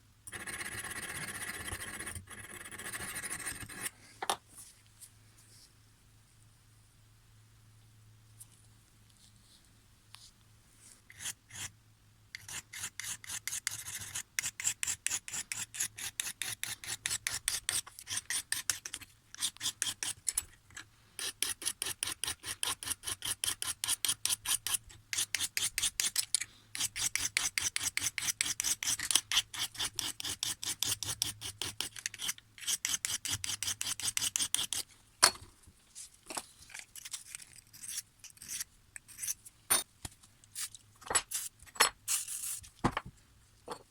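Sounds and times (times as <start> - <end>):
blade sharpening rasping strokes: 21.2 - 34.8.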